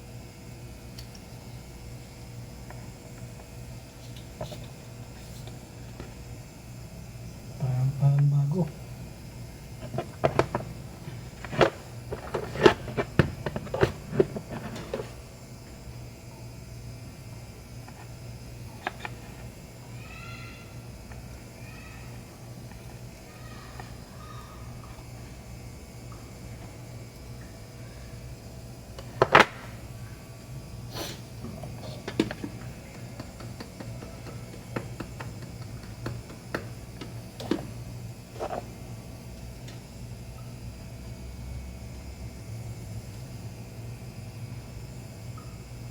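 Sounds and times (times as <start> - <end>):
steady low hum: 0.0 - 45.9
clicks and taps handling a cable: 9.8 - 15.1.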